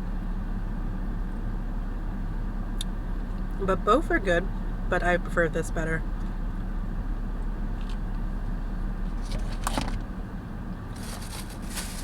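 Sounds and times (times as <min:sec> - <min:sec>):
car engine rumble: 0:00.0 - 0:12.0
crisp rustling: 0:10.9 - 0:12.0.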